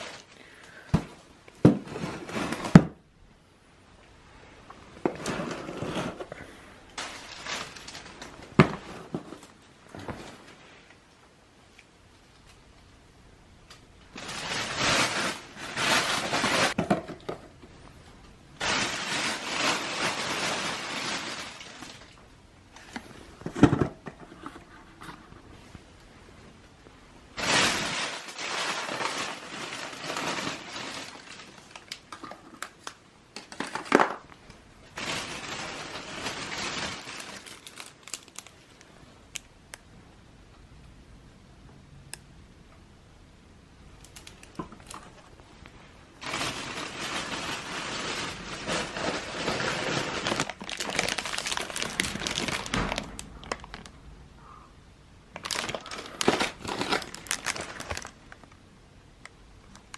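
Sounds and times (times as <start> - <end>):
crinkling and rustling: 0.0 - 3.1, 4.6 - 12.6, 13.6 - 39.5, 44.0 - 54.1, 55.3 - 59.9.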